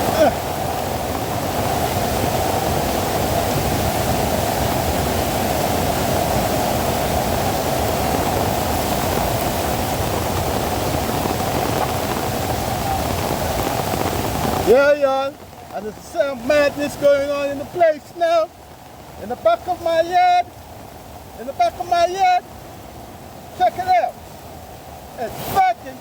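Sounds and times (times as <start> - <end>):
floodwater rushing: 0.0 - 26.0.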